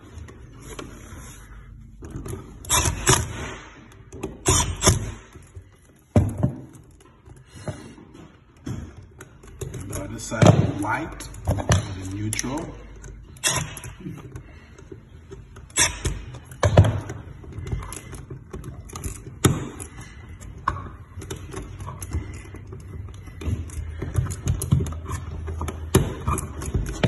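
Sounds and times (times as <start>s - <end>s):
hand tools clicking and knocking: 2.0s - 27.0s.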